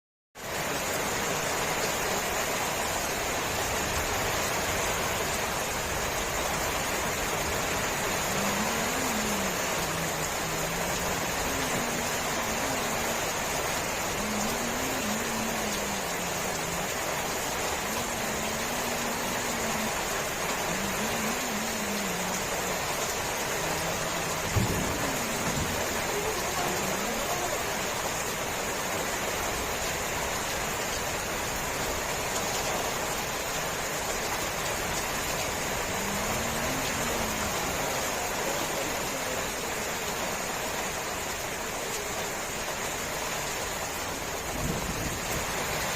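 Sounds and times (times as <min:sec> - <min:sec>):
heavy rain falling: 0:00.4 - 0:45.9
faint low wavering voice: 0:07.4 - 0:28.3, 0:35.6 - 0:40.6.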